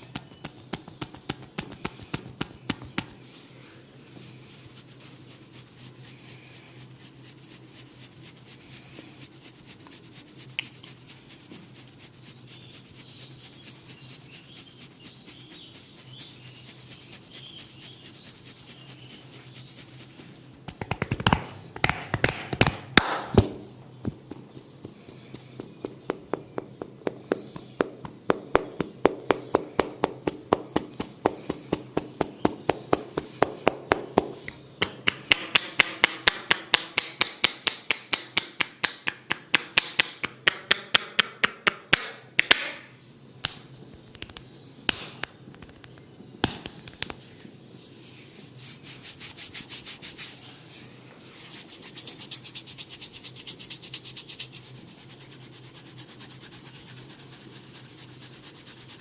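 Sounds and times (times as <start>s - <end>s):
hands tapping on a head: 0.0s - 3.2s, 20.6s - 47.2s
hands rubbing through hair: 0.0s - 34.6s, 46.7s - 59.0s
brushing hiss: 1.7s - 20.6s, 47.1s - 59.0s.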